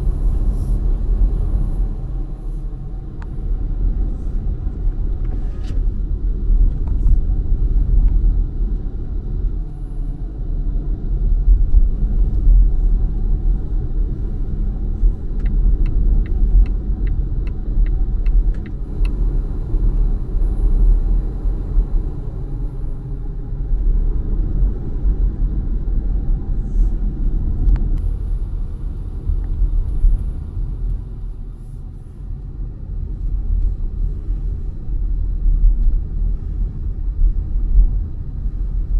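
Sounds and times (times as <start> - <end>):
road and tyre noise: 0.0 - 38.9
light ticks: 15.4 - 19.2.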